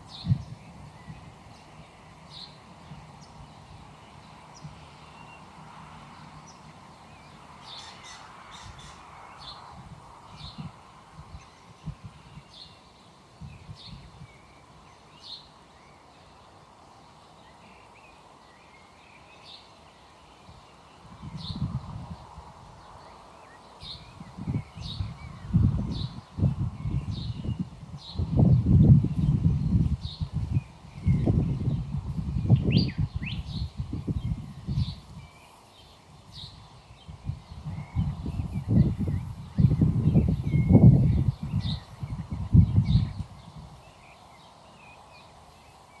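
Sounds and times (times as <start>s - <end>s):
faint background hiss: 0.0s - 46.0s
birds chirping: 22.8s - 46.0s.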